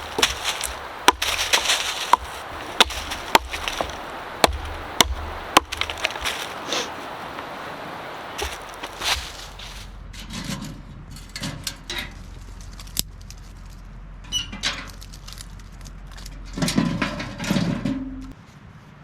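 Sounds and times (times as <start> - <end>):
wood knocking on wood: 0.0 - 6.5, 8.4 - 9.8
rustling: 0.0 - 7.2, 8.3 - 10.1.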